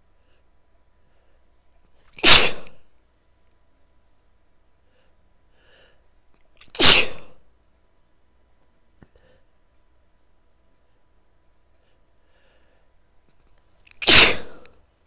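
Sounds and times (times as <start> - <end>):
woman sneezing: 2.2 - 2.8, 6.6 - 7.4, 14.0 - 14.8.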